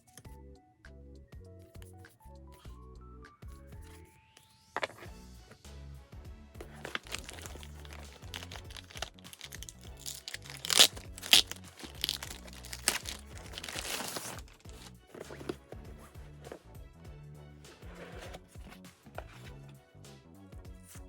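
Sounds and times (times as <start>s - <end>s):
background music: 0.0s - 21.0s
packaging crinkling and tearing: 6.6s - 15.5s.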